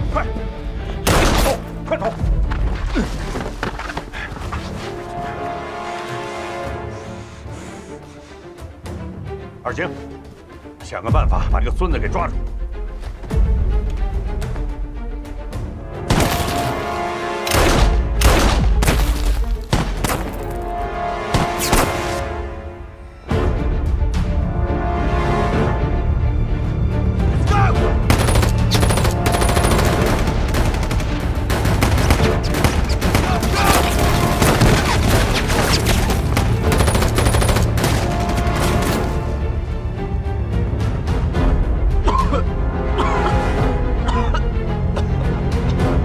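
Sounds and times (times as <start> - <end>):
tense film score music: 0.0 - 46.0
rapid gunshots: 28.1 - 39.2.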